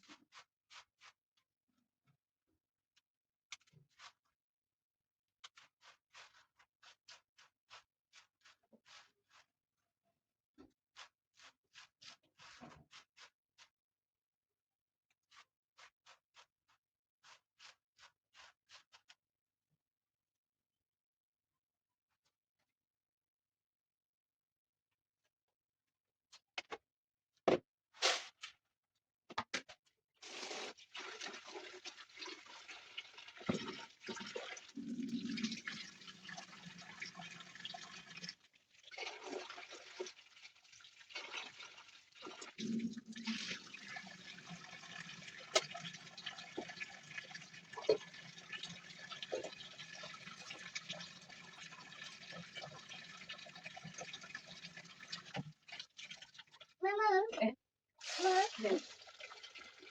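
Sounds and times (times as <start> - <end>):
water running: 30.2 - 56.8, 58.0 - 59.9.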